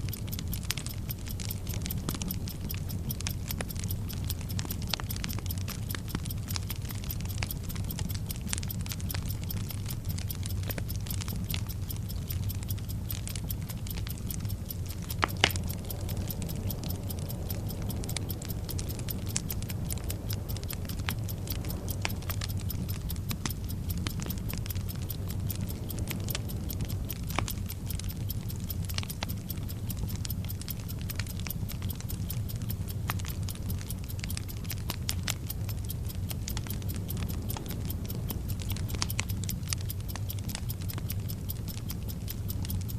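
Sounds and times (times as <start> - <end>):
burning fuse crackling: 0.0 - 42.9
clock-like ticking: 0.0 - 42.9
low hum: 0.0 - 42.9.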